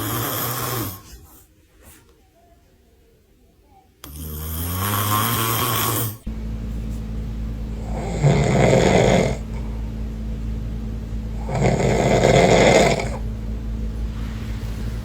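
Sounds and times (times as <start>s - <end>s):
man snoring: 0.0s - 1.2s, 4.0s - 6.3s, 7.8s - 9.7s, 11.4s - 13.2s
steady low hum: 4.0s - 15.0s.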